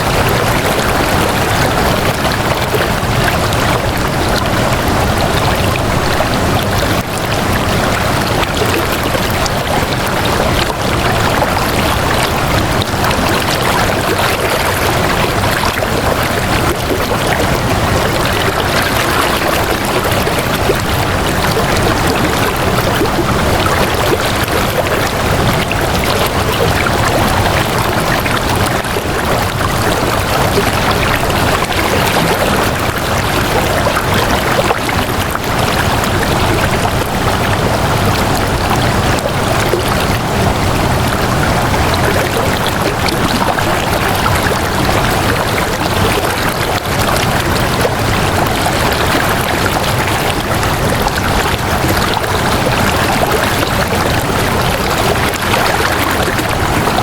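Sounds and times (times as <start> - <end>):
flowing water rushing: 0.0 - 57.0.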